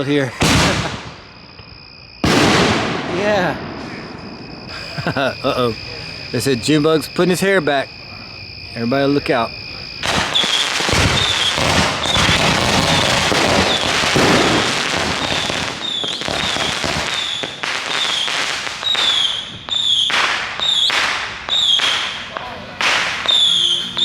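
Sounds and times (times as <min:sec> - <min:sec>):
fireworks crackling and banging: 0:00.0 - 0:07.8, 0:09.2 - 0:24.0
high whistle: 0:10.3 - 0:14.0, 0:15.2 - 0:22.3, 0:23.1 - 0:24.0.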